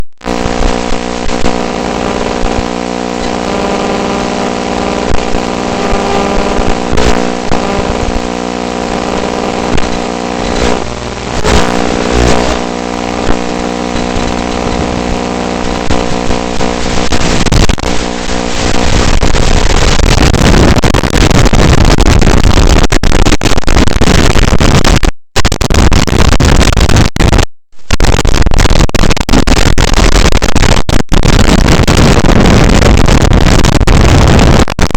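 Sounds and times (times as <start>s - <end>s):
drone motors humming: 0.3s - 19.1s.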